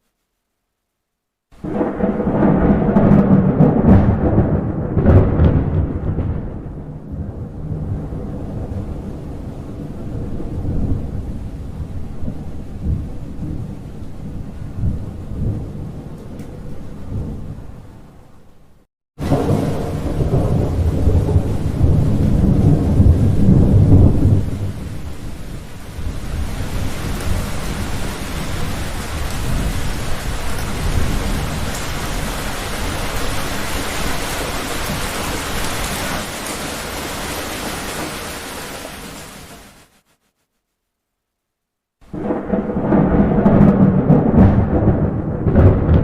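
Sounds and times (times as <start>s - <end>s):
rolling thunder: 1.6s - 18.0s, 19.2s - 39.1s, 42.1s - 46.0s
heavy rain hissing: 19.2s - 40.1s.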